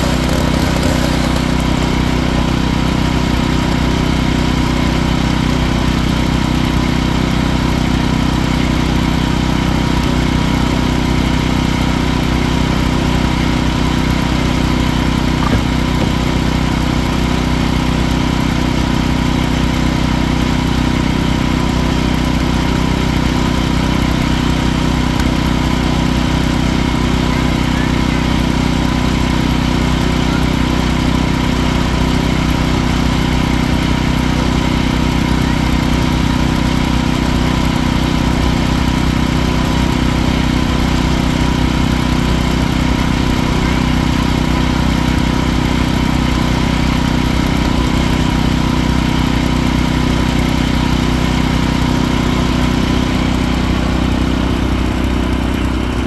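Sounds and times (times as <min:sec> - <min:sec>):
band blade sawing log: 0:00.0 - 0:02.6, 0:14.2 - 0:17.2
sawmill engine running: 0:00.0 - 0:56.0.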